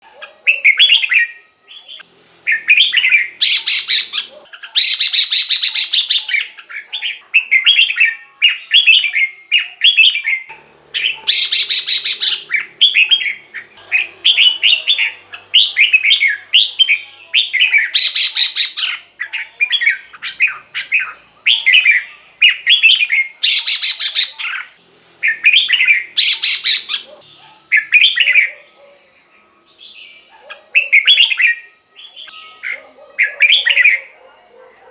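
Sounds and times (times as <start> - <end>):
harsh rasping bird calls: 0.0 - 29.2, 29.8 - 34.9
bulbul whistled song: 0.1 - 34.2.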